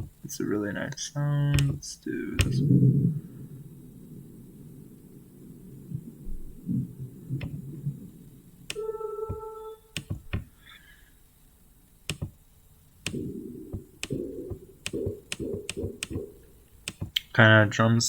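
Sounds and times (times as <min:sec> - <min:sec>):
sharp mouse clicks: 0:14.0 - 0:14.2, 0:14.8 - 0:17.3.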